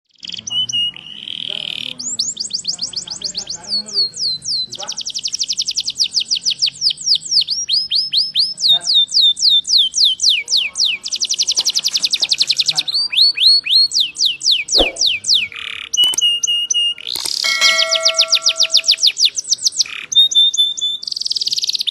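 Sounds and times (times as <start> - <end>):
canary singing trills: 0.2 - 21.9.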